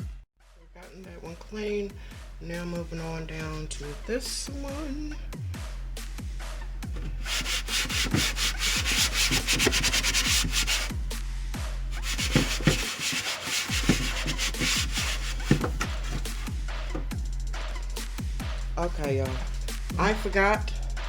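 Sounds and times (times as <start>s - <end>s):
upbeat electronic music: 1.2s - 5.3s, 6.8s - 12.8s, 13.5s - 21.0s
rapid scrubbing strokes: 6.9s - 21.0s.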